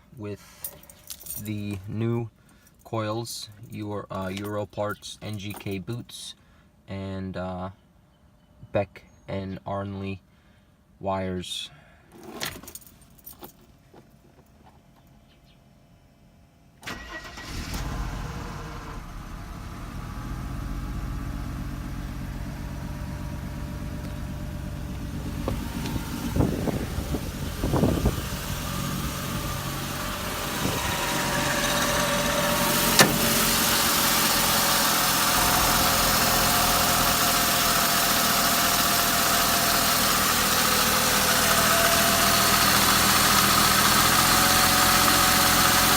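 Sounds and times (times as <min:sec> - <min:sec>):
car engine starting and idling: 0:16.8 - 0:45.9.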